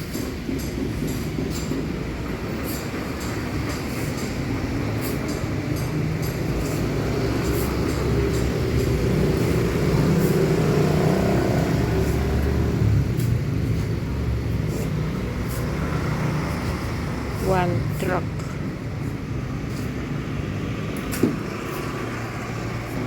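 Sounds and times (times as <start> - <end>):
vehicle engine rumbling: 0.0 - 23.0.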